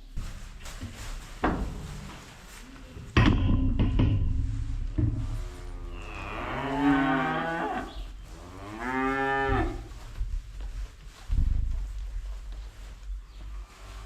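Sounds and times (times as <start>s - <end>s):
calf mooing: 5.4s - 9.9s.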